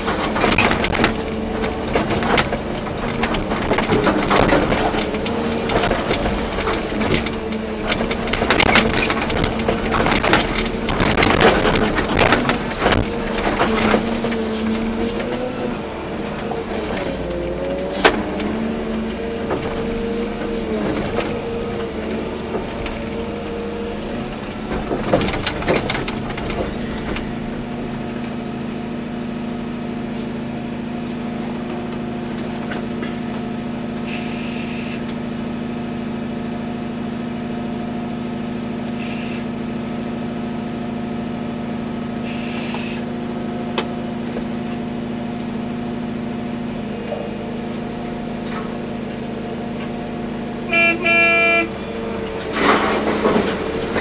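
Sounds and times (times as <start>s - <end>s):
clattering: 0.0s - 28.5s, 51.9s - 54.0s
excavator diesel engine running: 0.0s - 54.0s
horn blast: 50.7s - 51.8s.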